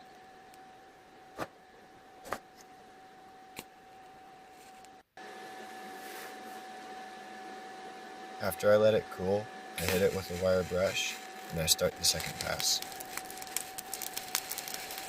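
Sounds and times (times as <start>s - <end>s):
welding arc hissing: 9.8s - 15.0s.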